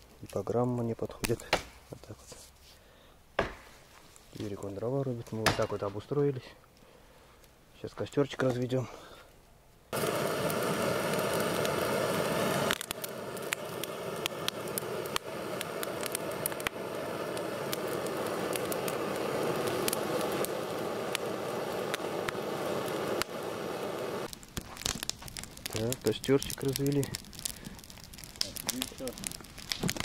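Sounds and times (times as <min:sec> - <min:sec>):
campfire crackling and popping: 0:00.0 - 0:01.8, 0:09.3 - 0:30.0.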